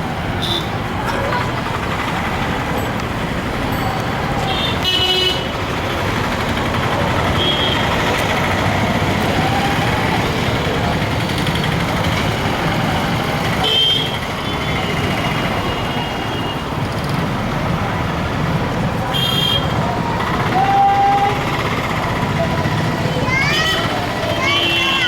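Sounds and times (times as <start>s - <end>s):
road traffic: 0.0s - 25.0s
vehicle horn toots: 13.6s - 14.7s, 19.1s - 19.7s.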